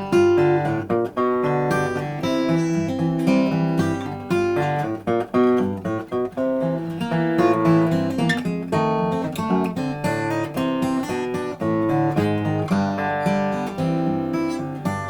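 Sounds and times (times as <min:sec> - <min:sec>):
finger-picked acoustic guitar: 0:00.0 - 0:15.0.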